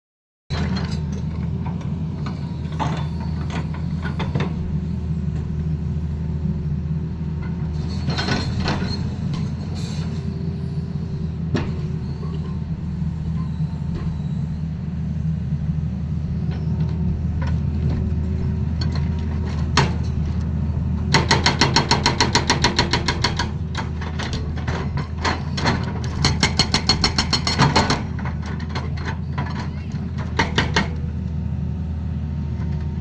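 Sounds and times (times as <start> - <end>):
excavator diesel engine running: 0.5 - 33.0
hydraulic breaker hammering: 21.1 - 23.6.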